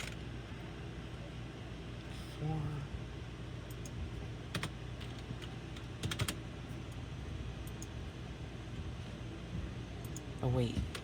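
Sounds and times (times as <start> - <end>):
steady low hum: 0.0 - 11.0
computer keyboard key presses: 4.5 - 5.2, 5.8 - 6.4.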